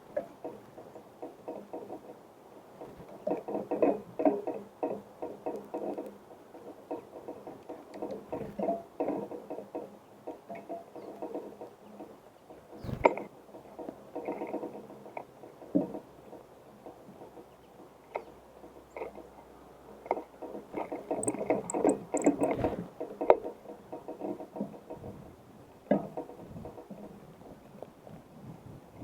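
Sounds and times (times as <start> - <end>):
birds tapping on feeder: 0.1 - 25.2
high bird chirps: 21.1 - 22.6.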